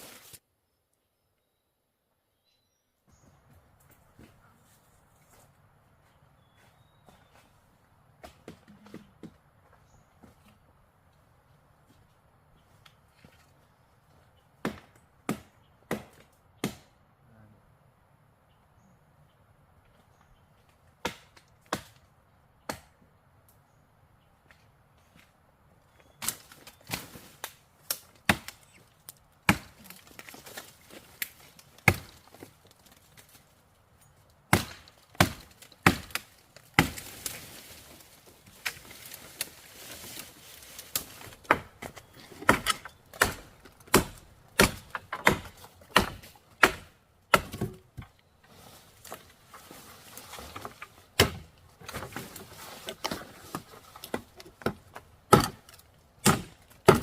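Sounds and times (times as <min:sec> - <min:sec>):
blade chopping wood: 0:27.9 - 0:28.6, 0:29.4 - 0:30.4, 0:31.2 - 0:32.5, 0:34.5 - 0:37.3, 0:41.0 - 0:48.1, 0:50.5 - 0:52.2, 0:52.9 - 0:57.0.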